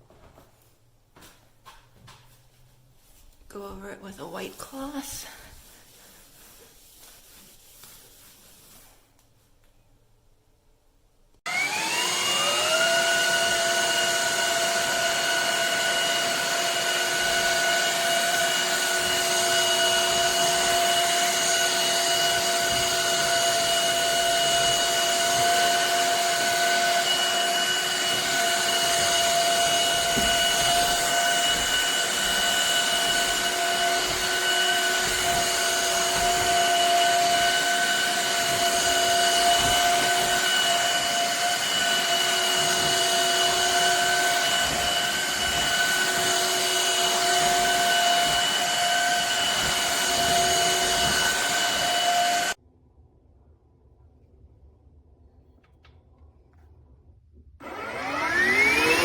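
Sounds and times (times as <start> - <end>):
vacuum motor whine: 11.5 - 52.6, 57.6 - 59.0.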